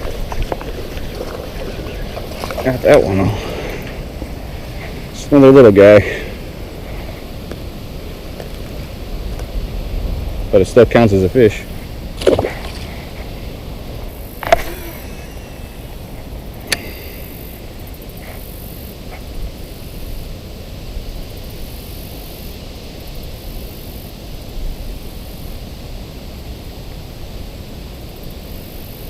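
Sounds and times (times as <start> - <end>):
wind noise on microphone: 0.0 - 29.0
faint ticks: 16.6 - 17.1.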